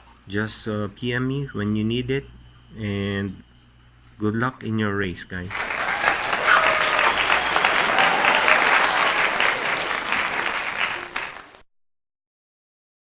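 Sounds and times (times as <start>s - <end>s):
crowd applause: 5.5s - 11.6s.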